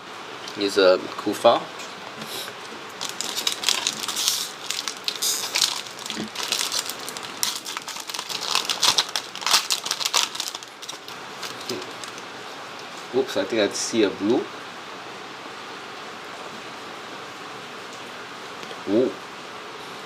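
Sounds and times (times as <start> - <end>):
foil wrapper crinkling and tearing: 3.0 - 12.3.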